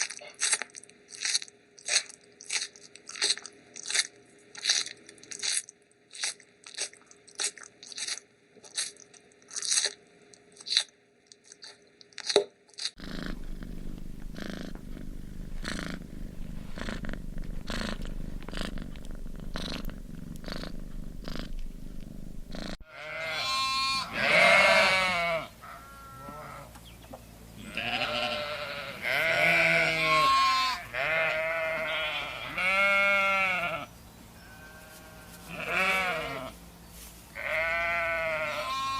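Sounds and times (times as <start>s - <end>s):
crunching bites: 0.0s - 13.0s
cat purring: 13.0s - 22.8s
wavering bleats: 22.5s - 26.7s, 27.6s - 36.6s, 37.4s - 38.9s.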